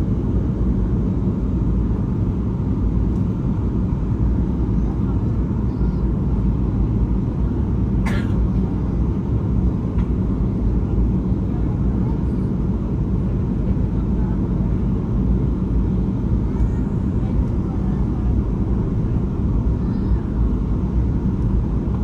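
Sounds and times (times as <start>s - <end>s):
airliner cabin rumble: 0.0s - 22.0s.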